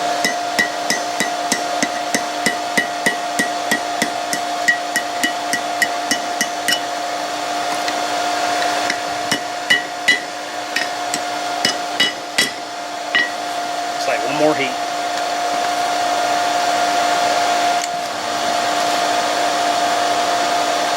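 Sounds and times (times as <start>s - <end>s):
hammer striking steel on anvil: 0.0s - 7.0s, 8.6s - 13.5s
steady hum: 0.0s - 15.3s.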